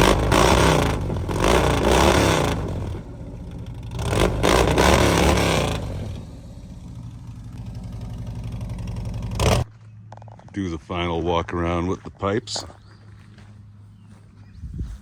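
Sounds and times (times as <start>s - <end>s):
motorcycle engine revving and idling: 0.0s - 10.5s.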